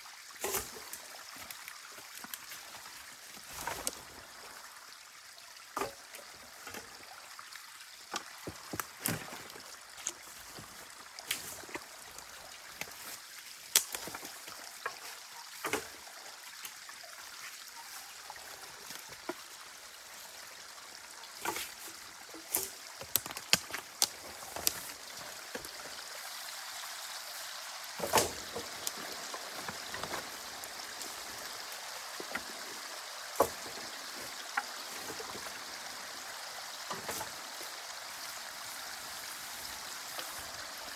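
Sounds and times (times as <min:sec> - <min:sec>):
water trickling through a dam: 0:00.0 - 0:40.9
sharp knocks and splashes: 0:08.1 - 0:16.7, 0:27.9 - 0:35.8.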